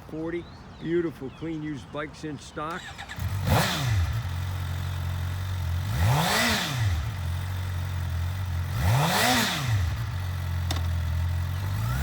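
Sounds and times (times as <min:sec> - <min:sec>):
motorcycle engine idling: 0:02.7 - 0:12.0
motorcycle throttle blips: 0:02.7 - 0:12.0.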